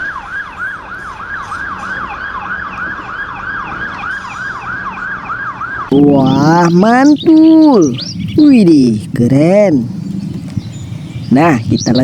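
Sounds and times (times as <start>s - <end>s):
electronic siren wailing: 0.0s - 7.9s.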